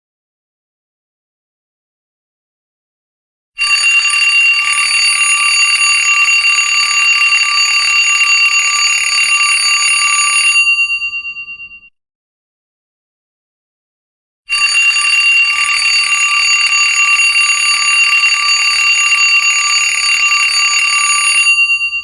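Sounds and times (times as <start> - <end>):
alarm clock bell ringing: 3.6 - 11.9, 14.5 - 22.0.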